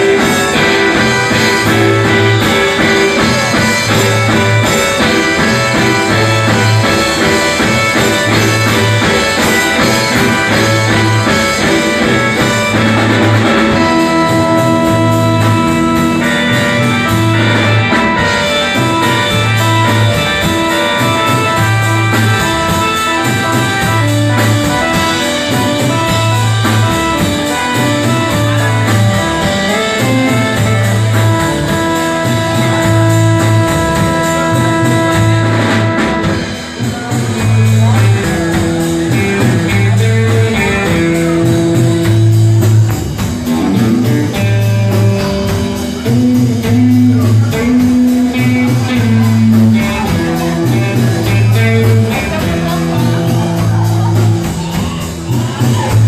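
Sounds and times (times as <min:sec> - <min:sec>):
guitar over low riff: 0:00.0 - 0:56.0
live rock band playing: 0:00.0 - 0:56.0.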